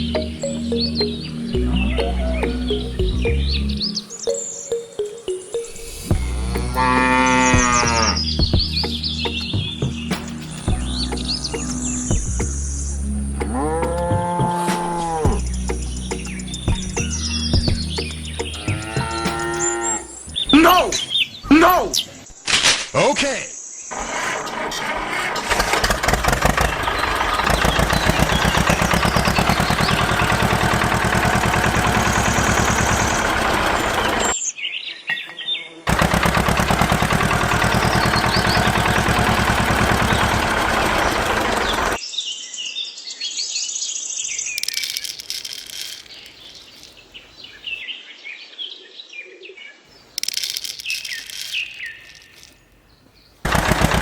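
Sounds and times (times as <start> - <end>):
birds chirping: 0.0 - 24.0, 26.0 - 43.0, 44.1 - 48.0, 48.8 - 54.0
small engine chugging: 23.9 - 34.3, 35.9 - 42.0, 53.5 - 54.0.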